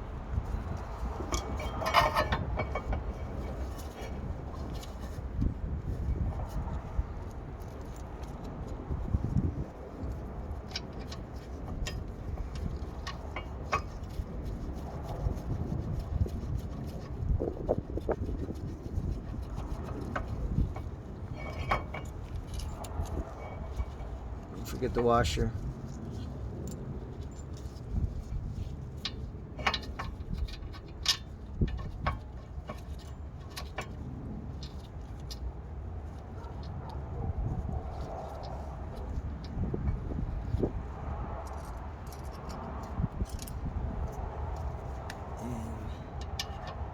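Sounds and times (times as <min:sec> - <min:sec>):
steady low rumble: 0:00.0 - 0:46.9
metal parts clinking: 0:01.2 - 0:05.1.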